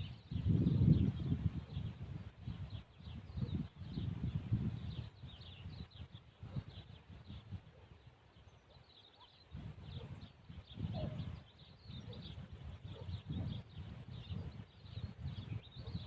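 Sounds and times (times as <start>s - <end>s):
low rumbles on microphone: 0.0s - 7.8s, 9.5s - 16.0s
small birds chirping: 0.0s - 16.0s.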